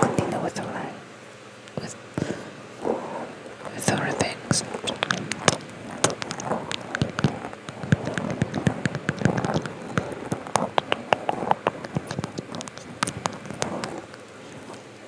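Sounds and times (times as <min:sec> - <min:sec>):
light crackle: 0:03.5 - 0:15.0
close-up clicks and taps: 0:03.7 - 0:14.2.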